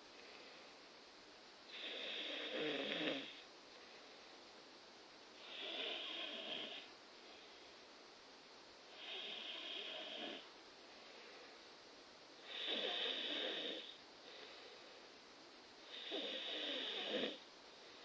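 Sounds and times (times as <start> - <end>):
person snoring: 1.7 - 3.4, 5.4 - 6.9, 8.9 - 10.5, 12.4 - 14.0, 15.9 - 17.4.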